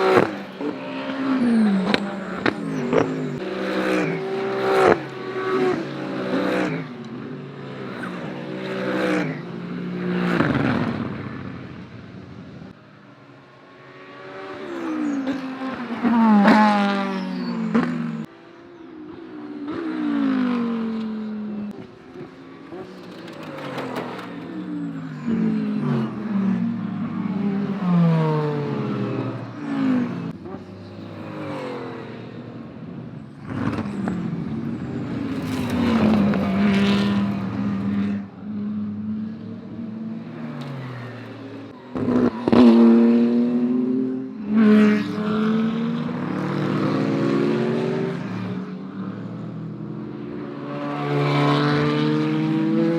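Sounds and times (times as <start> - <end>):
race cars passing at speed: 0.0 - 52.9.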